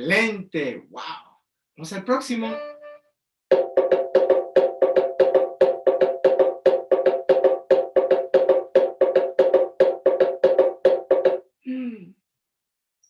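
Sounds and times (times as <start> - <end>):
bongo drums: 3.5 - 11.4.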